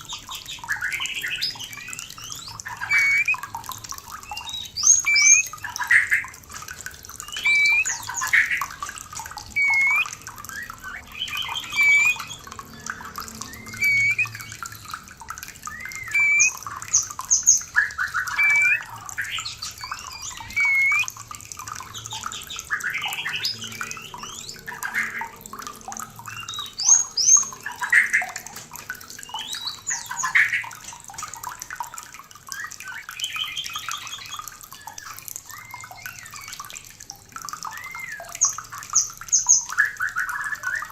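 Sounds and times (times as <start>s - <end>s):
bird whistles and trills: 0.0s - 40.9s
running water: 0.0s - 40.9s.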